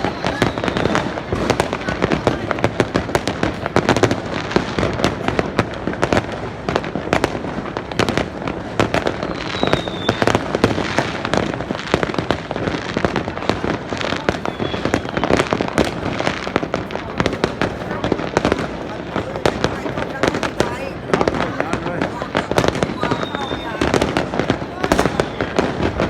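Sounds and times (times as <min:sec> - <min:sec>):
faint high whistle: 0:00.0 - 0:01.1, 0:09.3 - 0:10.4, 0:14.4 - 0:15.4, 0:23.0 - 0:23.9
fireworks crackling and banging: 0:00.0 - 0:26.0.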